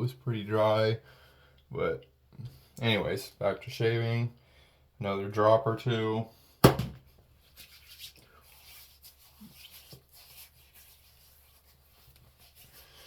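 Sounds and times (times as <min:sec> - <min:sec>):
hands rubbing oil: 0:07.4 - 0:13.0.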